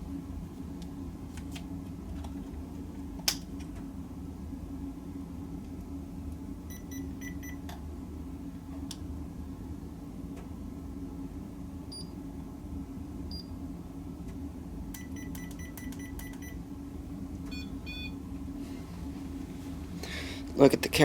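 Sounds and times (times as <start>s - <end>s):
electronic device beeping: 17.5s - 18.2s.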